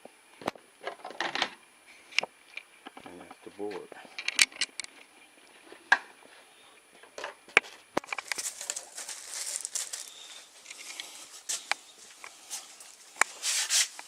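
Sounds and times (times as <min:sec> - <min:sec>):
plastic parts clicking and knocking: 0:00.4 - 0:01.6, 0:04.2 - 0:04.9
rustling and scraping: 0:02.9 - 0:14.0.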